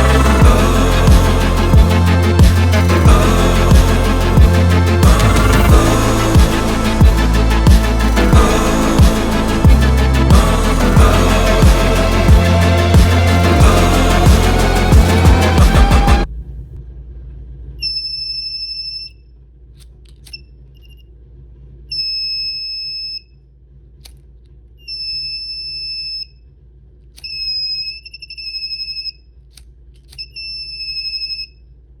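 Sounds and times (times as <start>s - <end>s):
high-pitched buzzer beeps: 30.2s - 31.6s.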